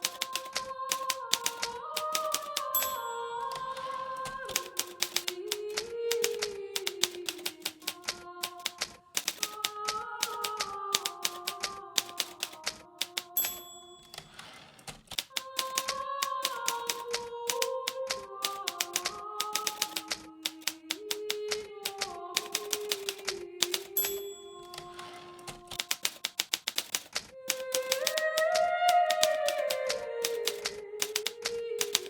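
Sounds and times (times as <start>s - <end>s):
typewriter carriage return slide: 0.0s - 3.9s, 4.5s - 32.0s
typewriter bell ding: 0.0s - 21.4s, 22.4s - 28.2s, 28.9s - 32.0s
typewriter keys striking: 0.0s - 32.0s.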